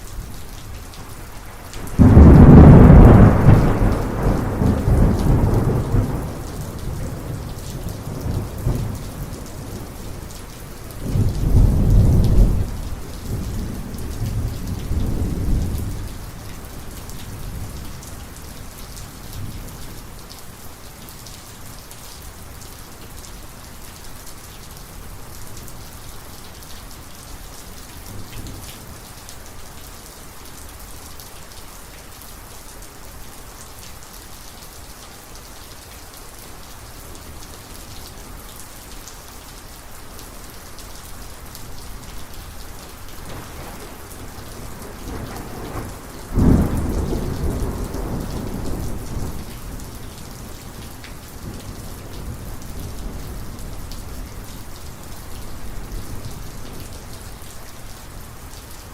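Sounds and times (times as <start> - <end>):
heavy rain falling: 0.0 - 58.9
thunder rumbling: 1.8 - 10.0, 43.2 - 49.8.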